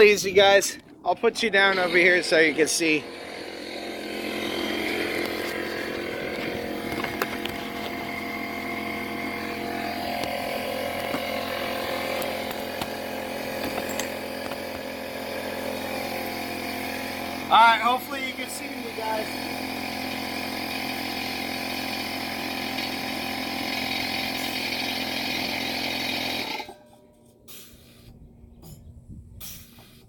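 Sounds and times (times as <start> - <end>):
air compressor running: 0.0 - 28.8.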